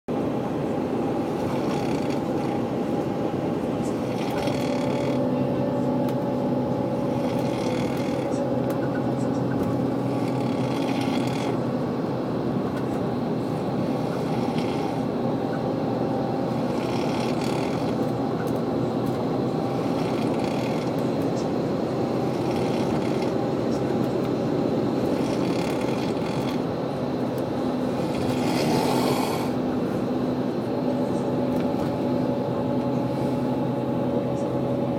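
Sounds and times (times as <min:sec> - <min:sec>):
steady hum: 0:00.1 - 0:34.9
person snoring: 0:01.3 - 0:02.6, 0:03.9 - 0:05.4, 0:07.0 - 0:08.4, 0:10.0 - 0:11.6, 0:13.8 - 0:15.1, 0:16.5 - 0:18.0, 0:19.7 - 0:21.0, 0:22.2 - 0:23.4, 0:25.0 - 0:26.6, 0:27.8 - 0:29.6.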